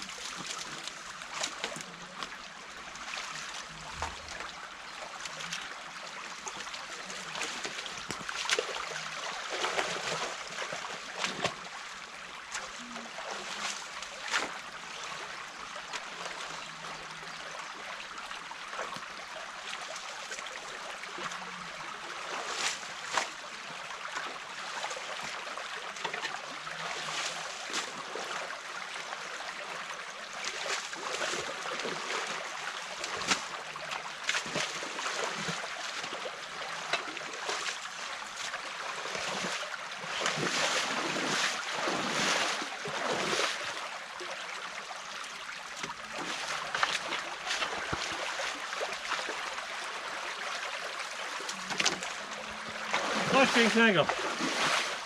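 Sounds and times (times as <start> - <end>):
water running and trickling: 0.0 - 55.0.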